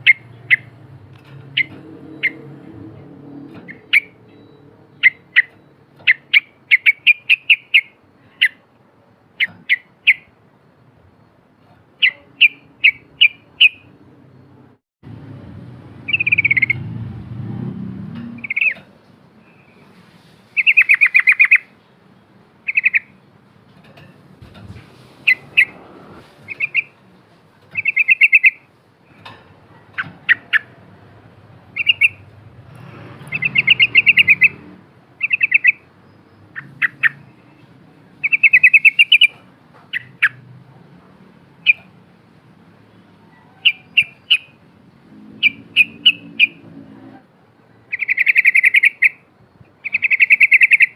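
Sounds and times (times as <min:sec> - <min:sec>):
bird sharp chips: 0:25.2 - 0:25.8.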